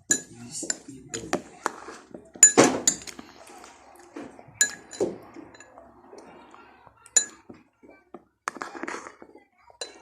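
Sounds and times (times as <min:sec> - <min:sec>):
spoons clinking against bowls: 0:00.0 - 0:01.4, 0:02.3 - 0:03.2, 0:04.6 - 0:05.8, 0:07.1 - 0:07.6, 0:09.8 - 0:10.0.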